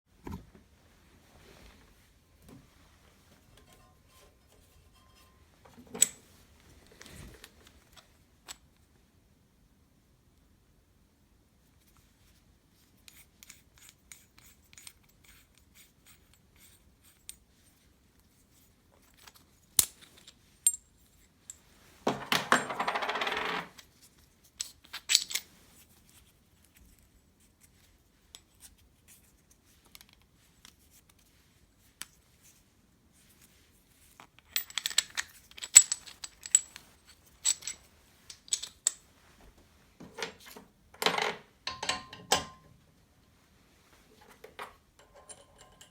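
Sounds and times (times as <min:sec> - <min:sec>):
small metal parts clinking: 0:24.6 - 0:25.4, 0:34.4 - 0:39.0, 0:45.0 - 0:45.9.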